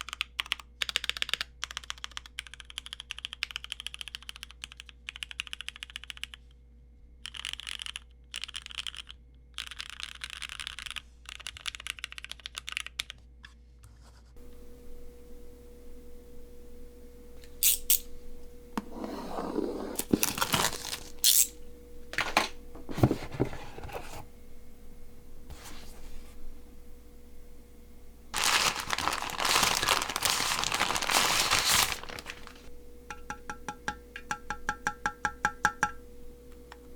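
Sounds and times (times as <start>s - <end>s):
mechanical keyboard typing: 0.0s - 6.4s, 7.2s - 13.2s
packaging crinkling and rustling: 19.6s - 21.6s, 28.3s - 32.7s.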